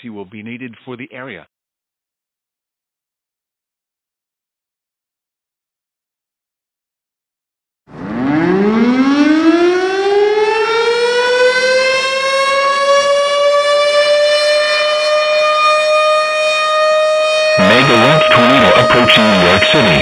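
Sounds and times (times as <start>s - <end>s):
tornado siren winding up: 7.9s - 20.0s.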